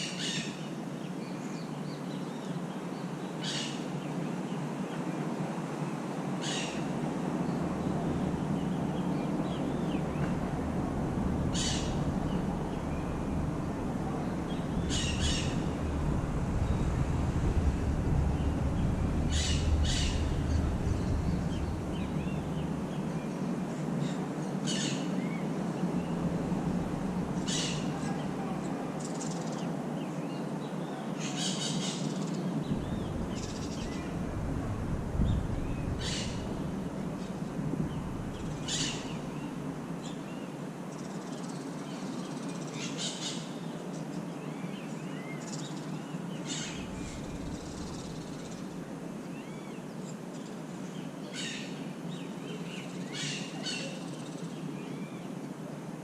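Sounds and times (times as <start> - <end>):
birds calling harshly: 0.0 - 0.8, 3.4 - 3.9, 6.4 - 6.9, 11.4 - 17.0, 17.8 - 29.8, 35.2 - 55.1
low background rumble: 7.0 - 29.0, 32.6 - 40.4, 46.6 - 49.1.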